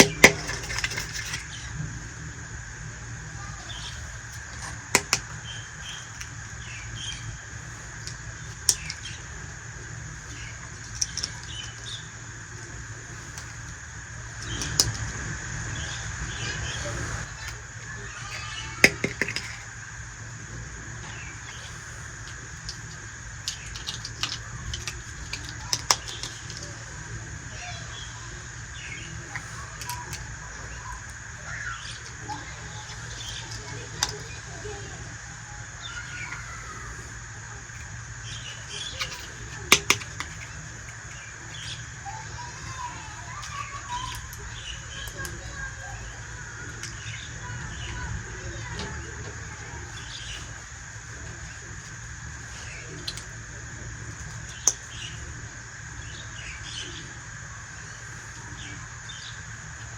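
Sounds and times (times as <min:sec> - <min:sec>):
small hard objects clicking: 0:00.0 - 0:01.8, 0:03.3 - 0:15.9, 0:17.2 - 0:20.2, 0:20.9 - 0:55.3
steady background hum: 0:00.0 - 0:59.9
faint bird chirps: 0:20.9 - 0:53.5.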